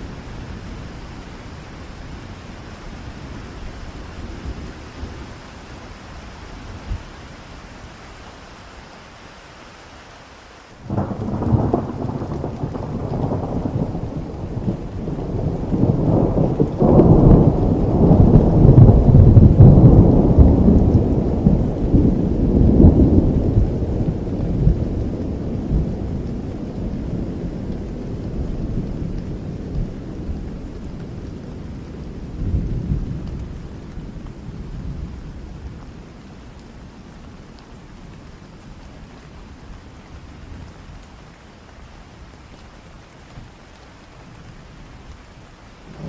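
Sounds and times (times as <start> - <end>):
steady rain: 0.0 - 46.0
thunder rumbling: 10.8 - 37.2, 45.8 - 46.0.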